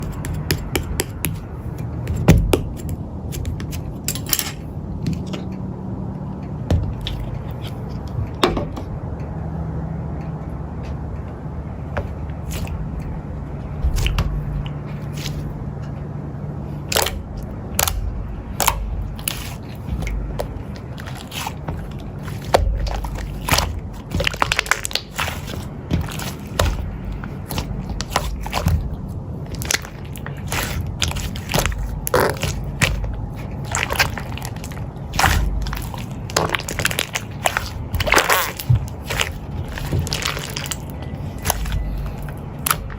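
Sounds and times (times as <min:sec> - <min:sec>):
eating clicks and crunches: 0:00.0 - 0:05.7, 0:13.8 - 0:16.0, 0:16.7 - 0:42.9
steady low hum: 0:00.0 - 0:42.9.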